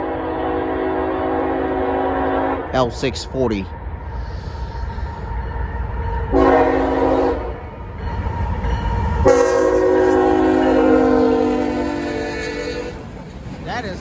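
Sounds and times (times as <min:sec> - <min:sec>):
locomotive air horn blasts: 0:00.0 - 0:02.7, 0:06.3 - 0:07.7, 0:09.2 - 0:13.1
diesel locomotive rumble: 0:00.0 - 0:14.0.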